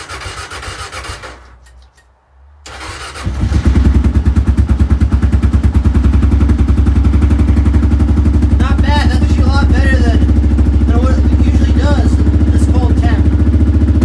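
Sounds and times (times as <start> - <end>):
starter motor cranking: 0.0 - 2.0, 2.7 - 3.9
motorcycle engine running: 3.1 - 14.0.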